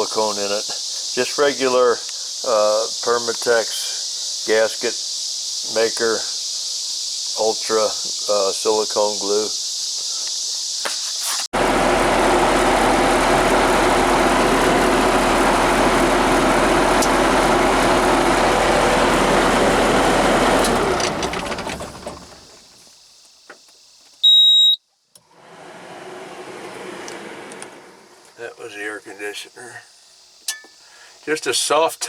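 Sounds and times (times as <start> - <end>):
air-conditioner blower running: 11.6 - 22.6, 25.3 - 28.3
short electronic beep: 24.2 - 24.8.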